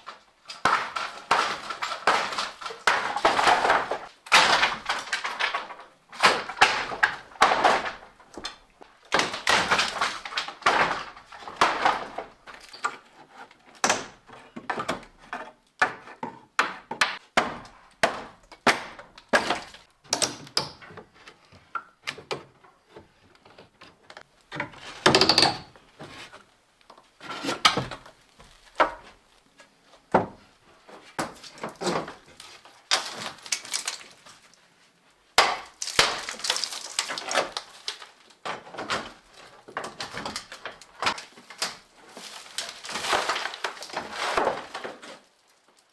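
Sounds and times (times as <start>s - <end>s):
wooden knocks and thuds: 13.8s - 21.1s, 24.5s - 26.2s, 30.1s - 30.4s.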